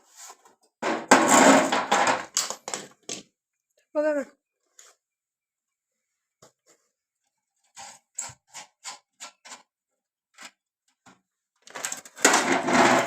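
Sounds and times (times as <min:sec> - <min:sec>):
rough scraping rattle: 0:12.2 - 0:13.0.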